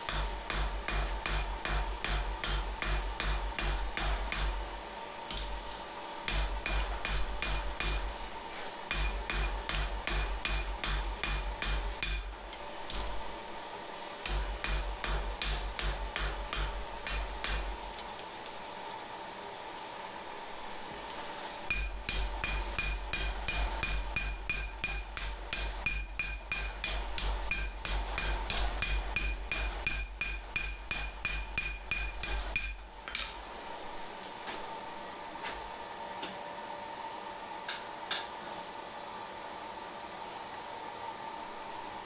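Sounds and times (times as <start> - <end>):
steady hum: 0.0 - 42.0
hammer ringing on anvil: 0.1 - 4.7, 6.3 - 8.1, 8.9 - 12.3, 14.2 - 17.6, 21.7 - 33.2.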